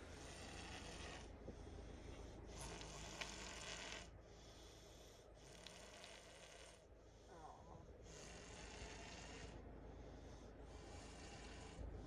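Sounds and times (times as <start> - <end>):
child snoring softly: 0.0 - 1.4, 2.5 - 4.2, 5.4 - 9.6, 10.7 - 11.9.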